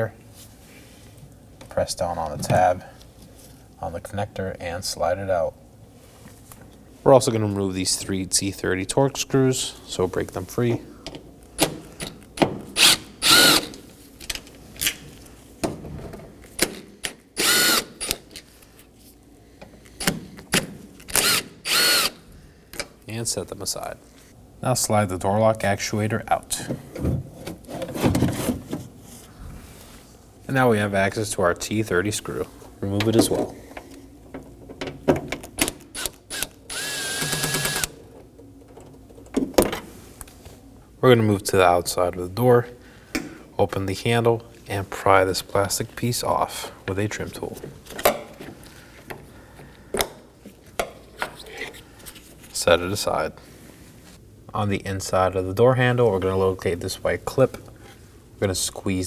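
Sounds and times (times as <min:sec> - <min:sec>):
power driver whining: 0:12.8 - 0:13.8, 0:17.4 - 0:18.2, 0:21.1 - 0:22.2, 0:35.9 - 0:38.0
power driver motor whine: 0:36.4 - 0:37.9.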